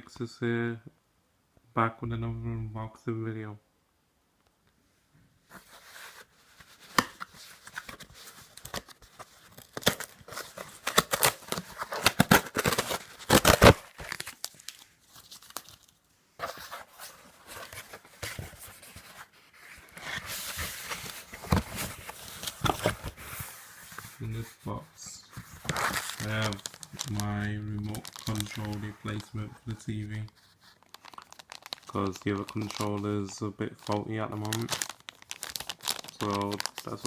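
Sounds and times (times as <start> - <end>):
packaging being torn and crinkled: 6.9 - 16.0, 25.7 - 29.3, 30.7 - 33.0, 33.8 - 37.0.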